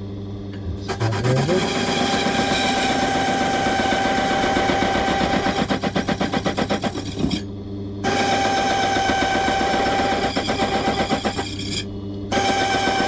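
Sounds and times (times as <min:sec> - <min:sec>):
cutter chattering against key blank: 0:00.8 - 0:06.9
key-cutting machine whining: 0:00.8 - 0:07.3, 0:08.0 - 0:13.0.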